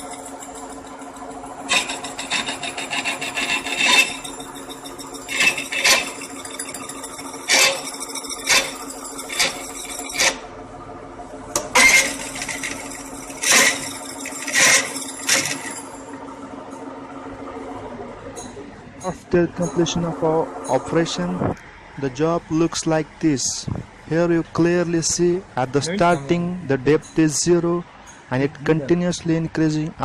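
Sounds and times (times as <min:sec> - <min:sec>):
lathe humming: 0:00.0 - 0:23.2
tool cutting bursts: 0:01.7 - 0:10.4, 0:11.6 - 0:15.8.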